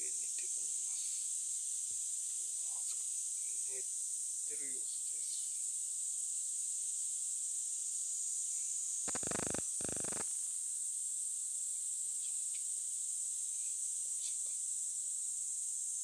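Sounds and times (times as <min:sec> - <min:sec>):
insect chirring: 0:08.8 - 0:11.0
short rasping bursts: 0:09.1 - 0:10.3.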